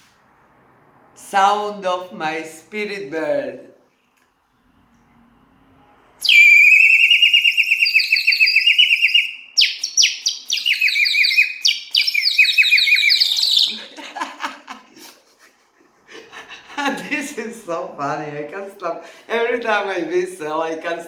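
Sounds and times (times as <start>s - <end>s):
water whistle warbling trill: 6.2s - 13.7s.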